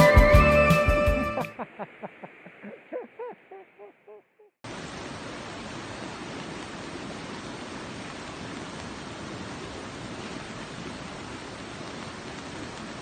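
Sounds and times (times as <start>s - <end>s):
background music: 0.0s - 1.6s
stream water rushing: 4.7s - 13.0s.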